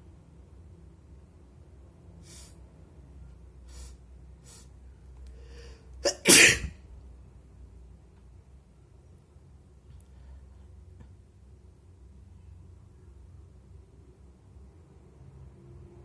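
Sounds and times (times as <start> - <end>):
person breathing in: 5.4 - 5.9
person sneezing: 6.0 - 6.7.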